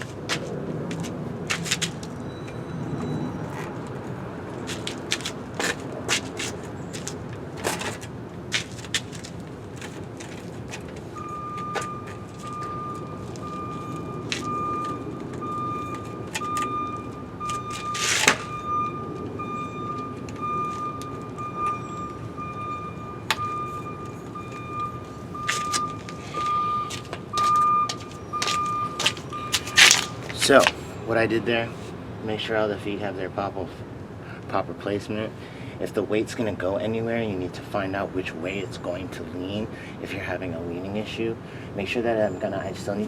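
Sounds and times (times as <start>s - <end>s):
pulsing high beeping tone: 11.2s - 30.2s.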